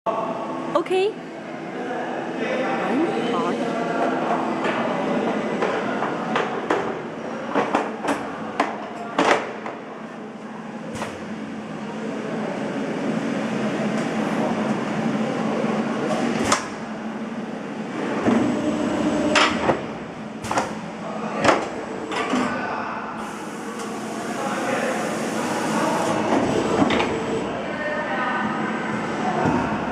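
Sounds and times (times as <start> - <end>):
background voices: 2.7 - 3.9.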